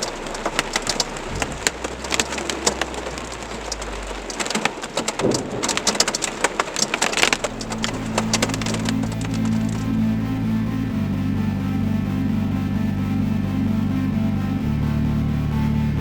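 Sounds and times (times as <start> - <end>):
low rumble: 0.0 - 6.4, 7.2 - 16.0
heavy rain with hail: 0.0 - 9.8
music: 7.4 - 16.0.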